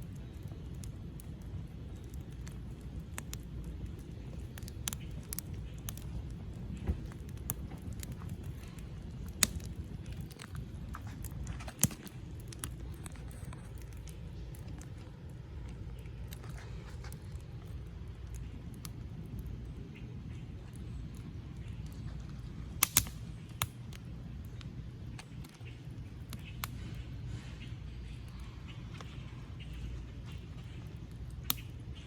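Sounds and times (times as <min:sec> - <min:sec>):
sharp fire pops: 0:00.0 - 0:27.1
campfire crackling: 0:00.0 - 0:32.0
low fire rumble: 0:00.0 - 0:32.0.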